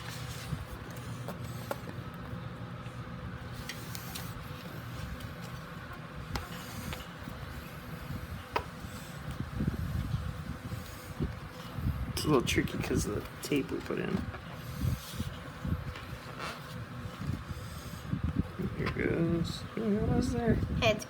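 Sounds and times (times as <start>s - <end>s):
steady low hum: 0.0s - 21.0s
bike tyre being handled: 12.4s - 19.0s.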